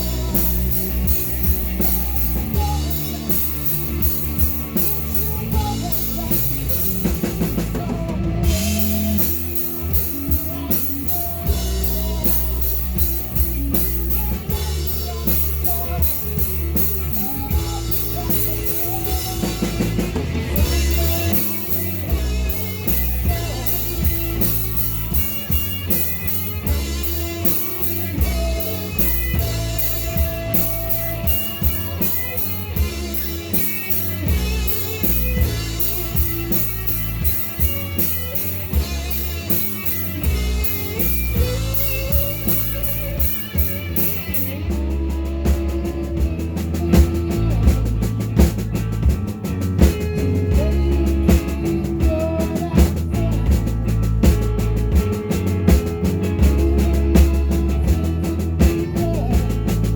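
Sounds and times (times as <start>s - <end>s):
drum kit beating: 0.0s - 59.9s
live rock band playing: 0.0s - 59.9s.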